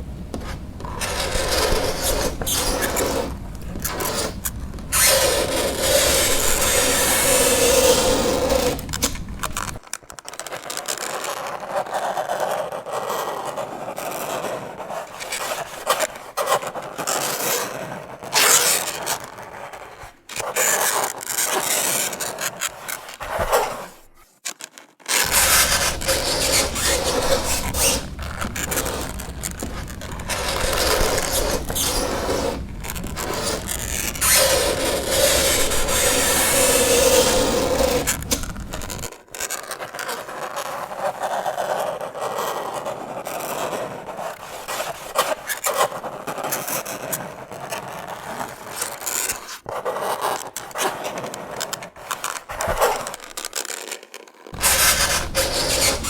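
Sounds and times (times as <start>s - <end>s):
fingernails scraping chalkboard: 0.0s - 9.8s, 25.2s - 39.1s, 54.6s - 56.0s.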